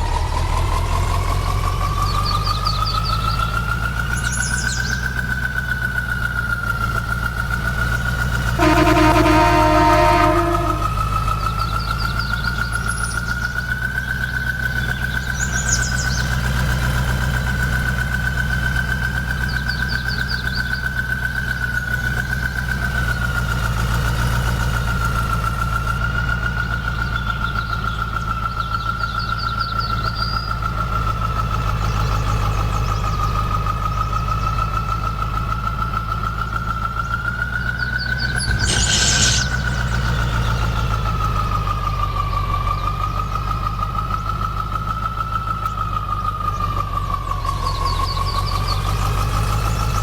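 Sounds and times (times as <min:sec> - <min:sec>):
engine idling: 0:00.0 - 0:50.0
high-pitched whine: 0:08.6 - 0:11.1, 0:38.2 - 0:41.1.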